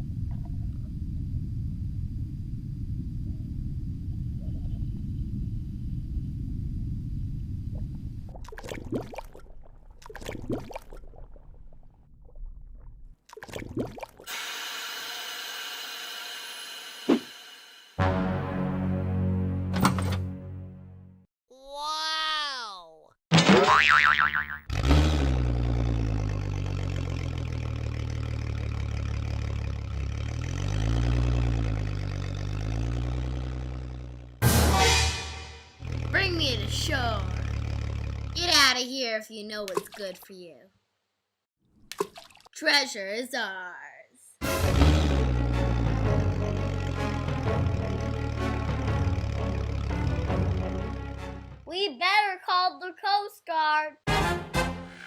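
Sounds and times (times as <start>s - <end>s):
water splashing and bubbling: 7.6s - 14.3s, 41.7s - 42.6s
background music: 18.0s - 21.2s, 34.4s - 37.2s, 44.4s - 51.7s, 54.1s - 55.0s
engine running: 24.7s - 38.6s, 44.4s - 51.7s, 54.1s - 55.0s.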